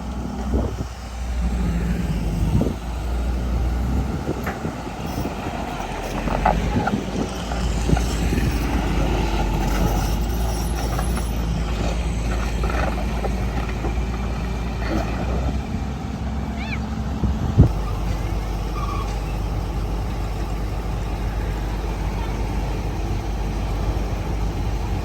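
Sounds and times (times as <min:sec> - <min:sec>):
excavator engine droning: 0:00.0 - 0:25.0
clunks: 0:04.3 - 0:15.7.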